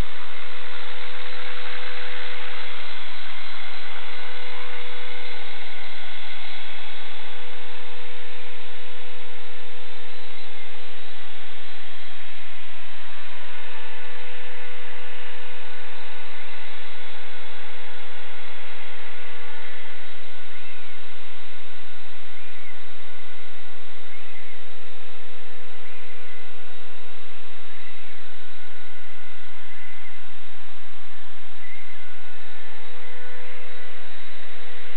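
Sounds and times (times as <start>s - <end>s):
rc helicopter motor whine: 0.0s - 34.9s.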